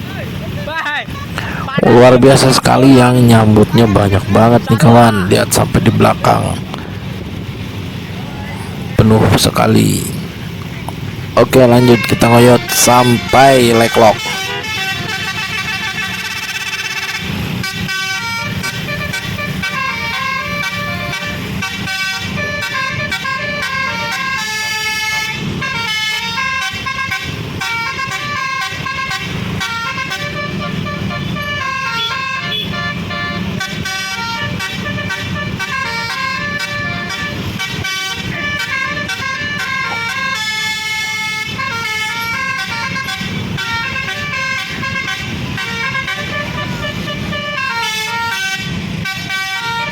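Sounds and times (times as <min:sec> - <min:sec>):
engine noise: 0:00.0 - 0:49.9
multi-tone musical bus horn: 0:01.3 - 0:07.2, 0:11.4 - 0:49.9.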